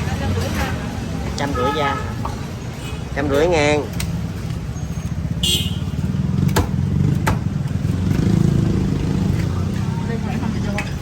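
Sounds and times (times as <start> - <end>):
motorbike engines rumbling: 0.0 - 11.0
sharp knocks: 6.4 - 7.5.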